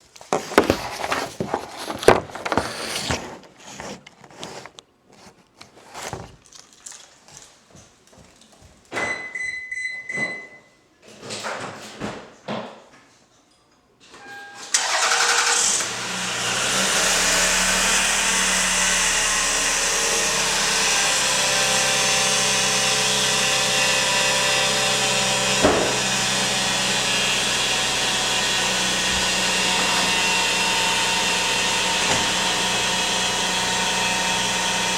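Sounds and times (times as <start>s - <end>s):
car engine cranking and idling: 14.7s - 34.9s.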